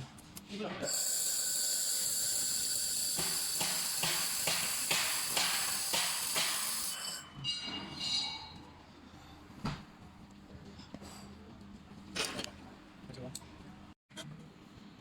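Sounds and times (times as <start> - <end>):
laser welder hissing: 0.8 - 7.2.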